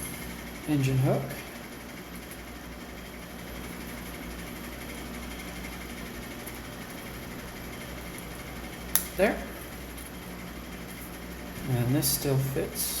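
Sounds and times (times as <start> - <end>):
low room hum: 0.0 - 13.0.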